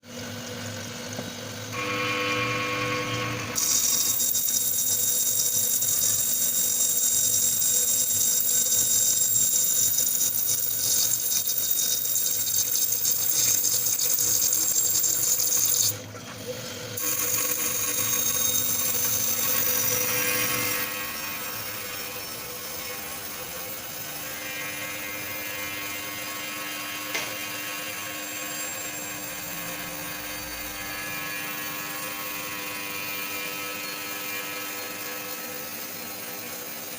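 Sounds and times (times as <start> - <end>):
machine hum: 0.2 - 4.2.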